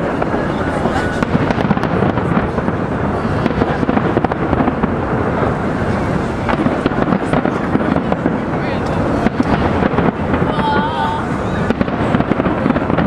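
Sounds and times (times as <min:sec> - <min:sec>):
fireworks bursting and crackling: 0:00.0 - 0:13.0.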